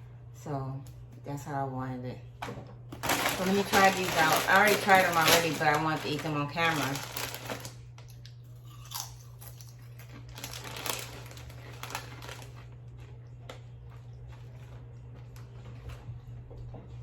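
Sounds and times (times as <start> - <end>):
steady low hum: 0.0 - 17.0
foil chip bag crinkling: 2.9 - 16.0.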